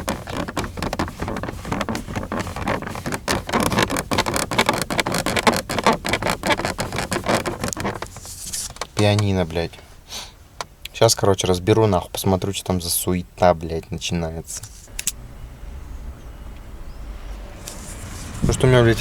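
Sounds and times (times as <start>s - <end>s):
plastic trim creaking and rattling: 0.0s - 9.7s.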